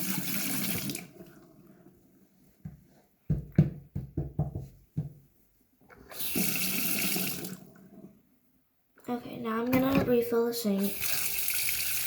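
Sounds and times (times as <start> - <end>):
water running into sink: 0.0 - 1.4, 6.0 - 8.0, 10.0 - 12.0
sharp knocks at sink: 3.3 - 5.2.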